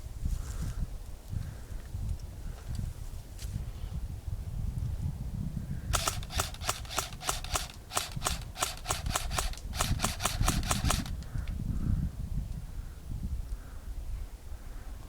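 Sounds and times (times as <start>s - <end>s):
wind rumble on microphone: 0.0s - 15.0s
airsoft gun firing: 6.0s - 11.5s.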